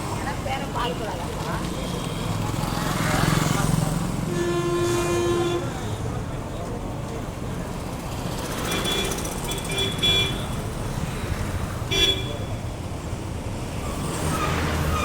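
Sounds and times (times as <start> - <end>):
low rumble of traffic: 0.0 - 15.0
short horn toots: 4.3 - 5.8.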